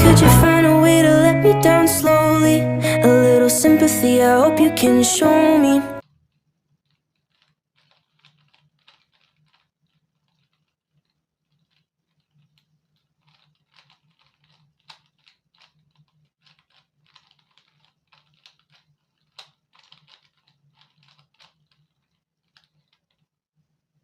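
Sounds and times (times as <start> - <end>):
puzzle cube clicking: 6.8 - 23.2.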